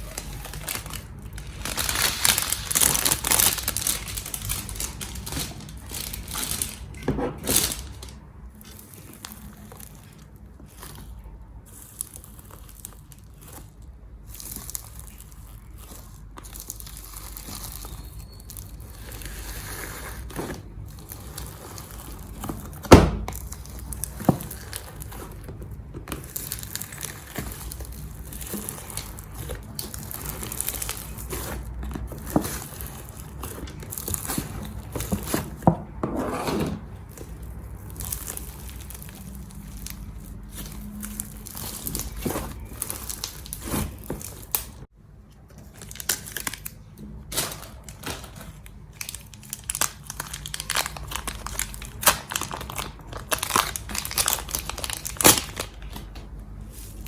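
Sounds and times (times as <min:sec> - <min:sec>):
slime squished by hand: 0:36.8 - 0:44.9.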